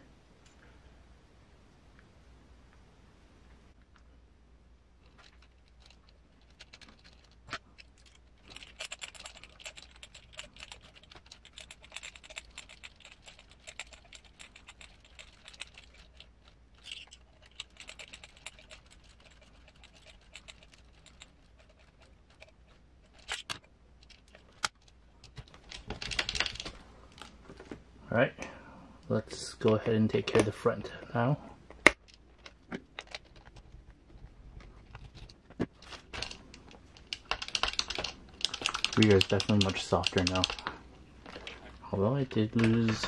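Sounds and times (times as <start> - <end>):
metal parts and tools clicking: 5.0 - 27.3, 31.9 - 33.7, 34.8 - 41.6.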